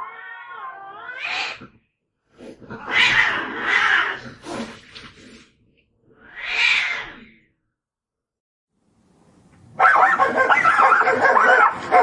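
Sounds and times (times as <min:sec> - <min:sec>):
cats fighting and hissing: 0:00.0 - 0:07.4.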